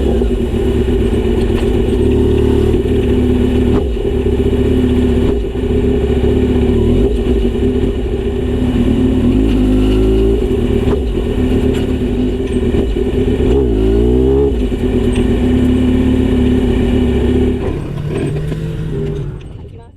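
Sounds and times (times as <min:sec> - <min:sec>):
motorcycle engine idling: 0:00.0 - 0:19.9
motorcycle throttle blips: 0:00.0 - 0:19.9.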